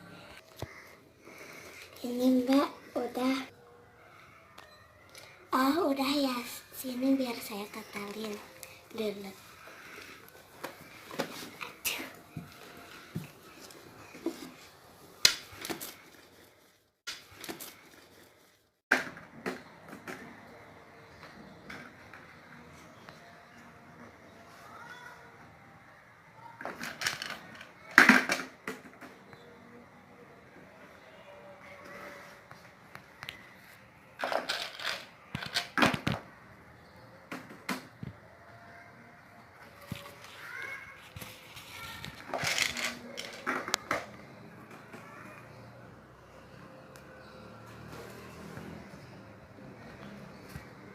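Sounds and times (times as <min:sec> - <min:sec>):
small items clicking and knocking: 0:26.6 - 0:29.2, 0:34.2 - 0:36.2, 0:41.2 - 0:44.2.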